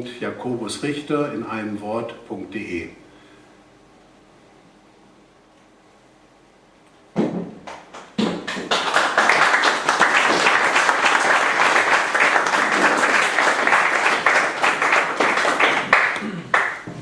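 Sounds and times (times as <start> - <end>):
audience applauding: 7.7 - 17.0.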